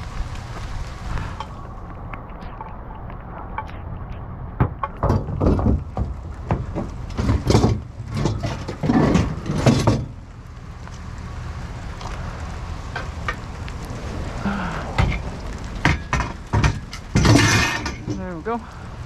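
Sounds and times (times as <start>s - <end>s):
knocking and clattering of furniture: 4.6s - 10.1s.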